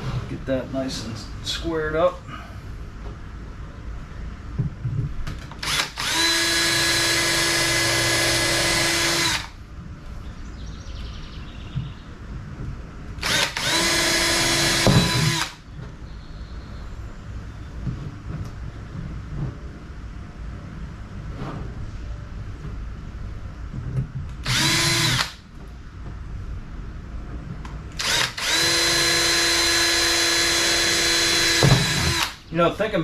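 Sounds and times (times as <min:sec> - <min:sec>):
power drill whining: 0:05.6 - 0:09.6, 0:13.2 - 0:15.6, 0:24.4 - 0:25.4, 0:28.0 - 0:32.4.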